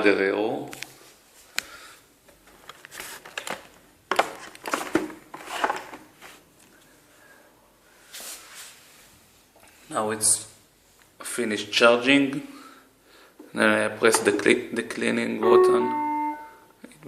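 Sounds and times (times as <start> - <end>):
rustling and scraping of handling: 2.3 - 7.0, 8.0 - 10.0.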